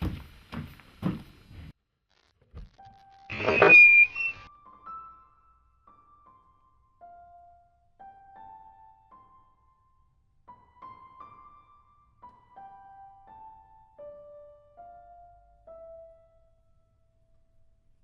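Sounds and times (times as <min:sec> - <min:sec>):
slow piano melody: 0:02.9 - 0:18.0.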